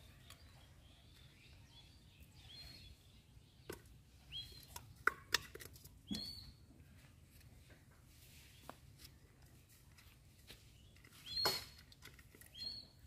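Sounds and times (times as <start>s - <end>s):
small bird chirping: 0.0s - 5.0s, 6.0s - 6.7s, 10.5s - 13.0s
faint outdoor background noise: 0.0s - 13.0s.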